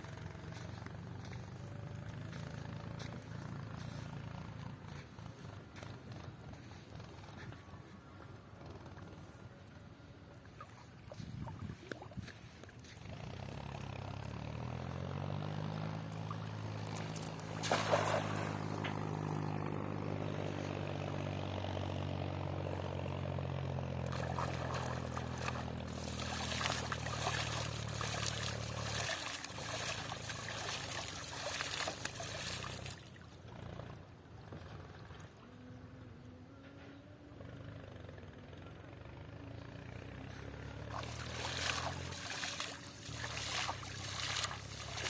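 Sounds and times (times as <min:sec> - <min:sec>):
small engine running: 0:00.0 - 0:45.0
water pouring and splashing: 0:16.9 - 0:18.8, 0:24.1 - 0:33.2, 0:40.9 - 0:45.0.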